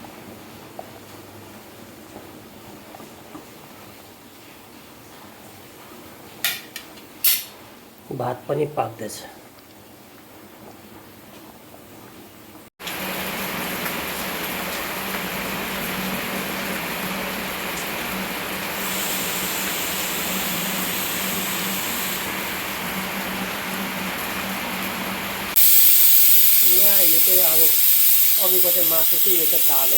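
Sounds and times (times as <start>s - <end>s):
rushing hiss with low hum: 12.9s - 29.9s
pressure cooker whistle: 18.8s - 22.3s, 25.6s - 29.9s.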